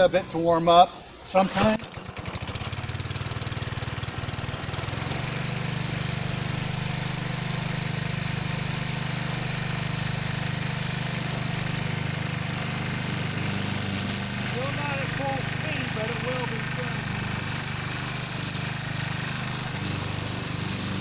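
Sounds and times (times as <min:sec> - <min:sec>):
string trimmer engine running: 0:01.5 - 0:21.0.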